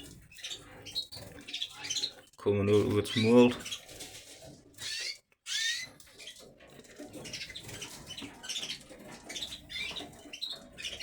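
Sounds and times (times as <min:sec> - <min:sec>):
canaries chirping: 0:00.0 - 0:11.0.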